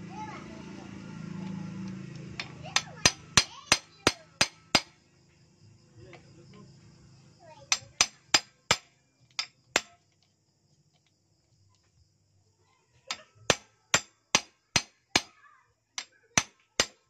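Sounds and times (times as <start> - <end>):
hammer tapping on metal: 2.4 - 4.9, 7.7 - 10.0, 13.1 - 15.3.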